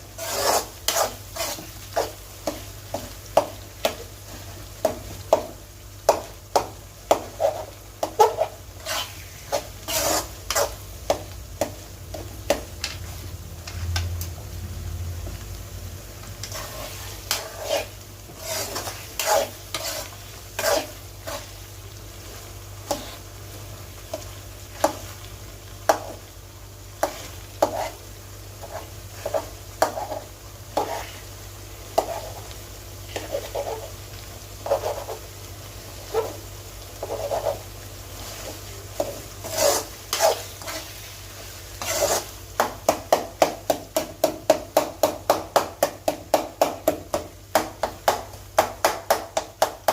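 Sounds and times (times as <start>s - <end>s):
utensil scraping a pan: 0.0s - 5.0s, 6.1s - 13.0s, 16.4s - 21.6s, 22.8s - 23.3s, 27.0s - 28.0s, 28.6s - 31.3s, 32.0s - 34.0s, 34.6s - 35.3s, 37.0s - 42.8s
faint sizzle: 0.0s - 49.9s.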